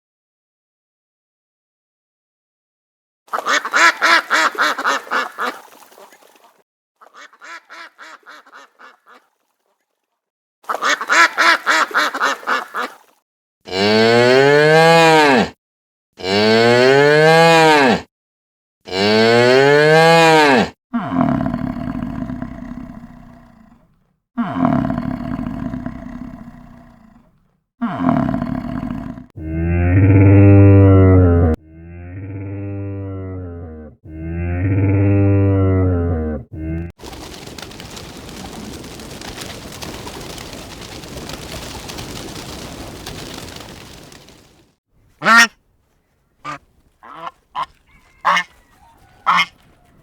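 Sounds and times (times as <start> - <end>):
pulsing animal calls: 46.5 - 50.0.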